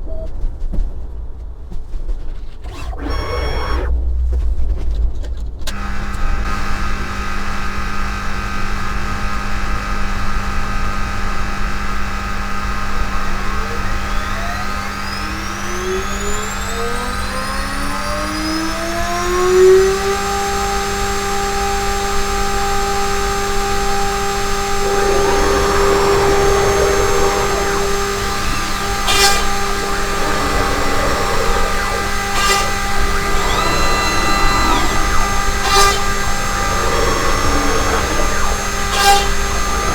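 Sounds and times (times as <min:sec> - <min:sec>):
end mill cutting plywood: 0:02.6 - 0:03.9, 0:05.7 - 0:39.9
router spindle whine: 0:02.6 - 0:03.9, 0:05.7 - 0:39.9
sharp clicks: 0:02.6 - 0:03.9, 0:24.7 - 0:39.9.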